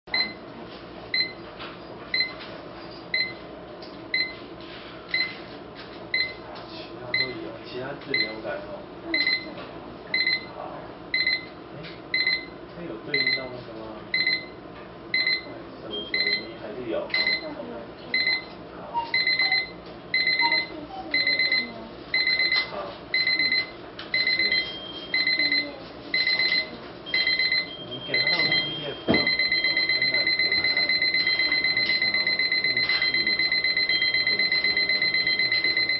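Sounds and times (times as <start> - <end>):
alarm clock beeping: 11.2 - 11.5, 15.2 - 16.4, 17.2 - 17.5, 19.1 - 35.9.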